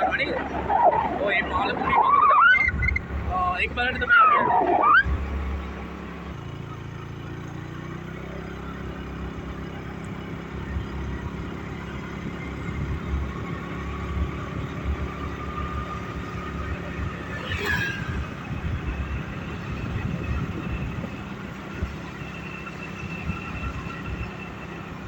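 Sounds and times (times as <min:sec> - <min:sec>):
vehicle engine running: 0:00.0 - 0:17.4
road noise: 0:00.0 - 0:25.0.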